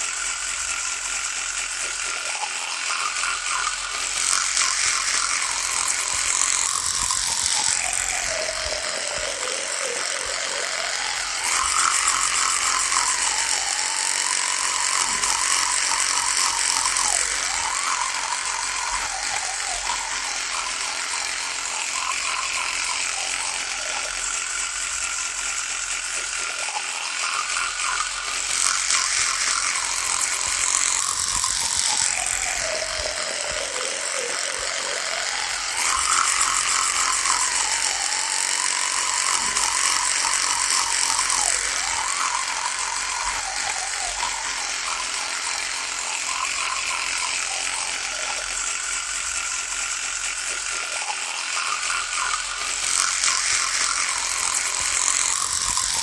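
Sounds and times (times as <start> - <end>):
electric toothbrush buzzing: 0.0 - 56.0.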